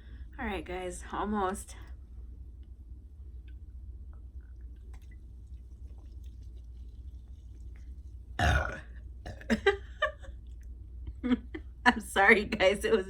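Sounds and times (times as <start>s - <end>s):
woman burping loudly: 8.4s - 9.8s.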